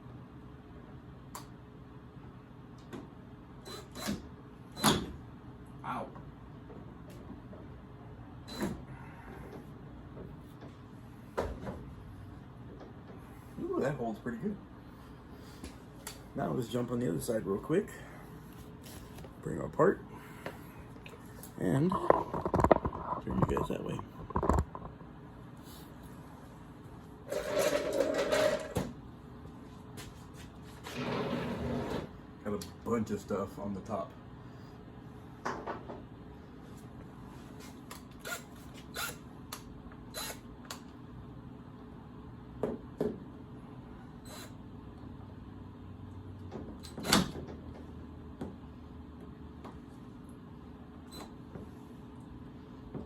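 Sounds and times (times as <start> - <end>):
steady low hum: 0.0 - 27.4, 32.0 - 53.0
cordless drill whirring: 38.2 - 39.2, 40.1 - 40.4.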